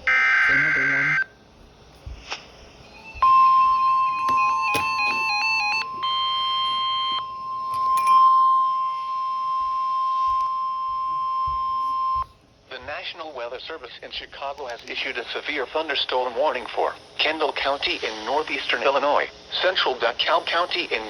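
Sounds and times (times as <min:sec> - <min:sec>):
held electronic chord: 0:02.8 - 0:09.8
stepping electronic alert melody: 0:02.9 - 0:07.4
steady single-pitch alert tone: 0:02.9 - 0:12.2.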